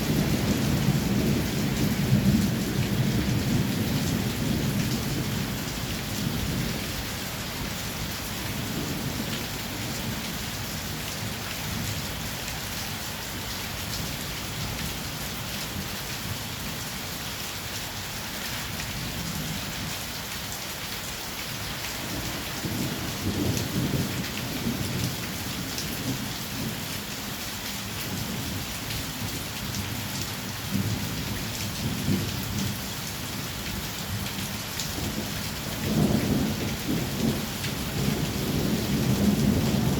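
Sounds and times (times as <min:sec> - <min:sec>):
low thunder rumbling: 0:00.0 - 0:06.8, 0:22.0 - 0:26.8, 0:35.0 - 0:39.9
heavy rain pouring: 0:00.0 - 0:39.9.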